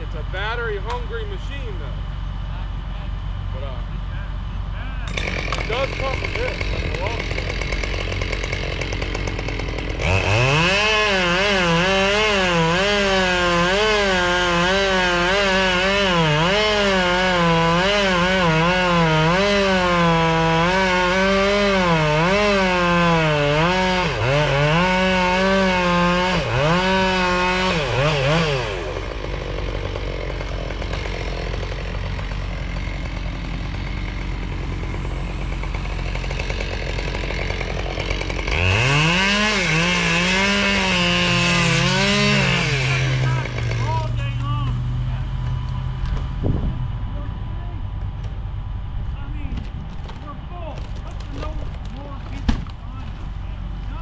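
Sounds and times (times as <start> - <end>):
chainsaw whining cutting wood: 5.0 - 46.8.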